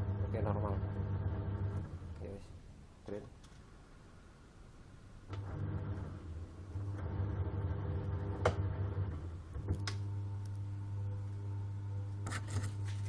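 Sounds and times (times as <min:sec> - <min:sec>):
washing machine motor humming: 0:00.0 - 0:02.3, 0:05.3 - 0:13.0.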